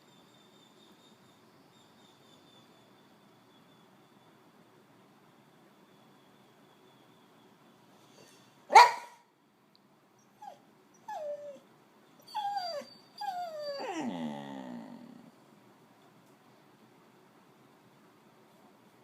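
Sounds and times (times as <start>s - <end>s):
dog barking: 8.7s - 9.3s
dog vocalising with falling calls: 12.3s - 15.3s.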